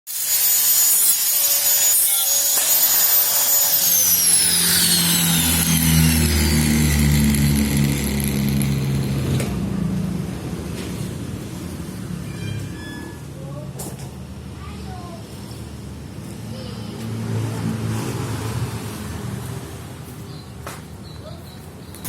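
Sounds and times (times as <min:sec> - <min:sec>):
power saw running and winding down: 0:00.1 - 0:09.8.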